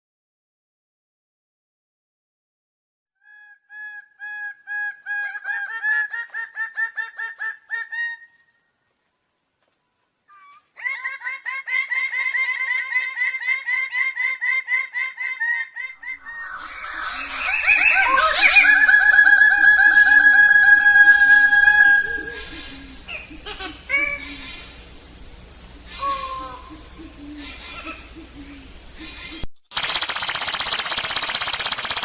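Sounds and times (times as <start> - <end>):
bird calling repeated notes: 29.7 - 32.0.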